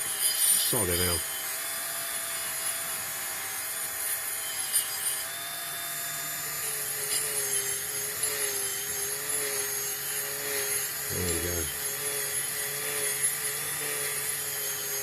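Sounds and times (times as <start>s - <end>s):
scratchy brushing on metal: 0.0s - 1.2s
rotary tool motor whine: 0.0s - 15.0s.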